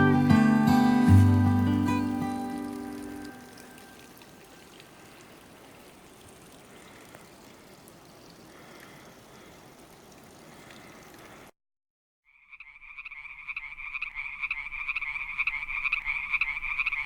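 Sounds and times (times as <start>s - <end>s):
running water rushing: 0.0s - 11.5s.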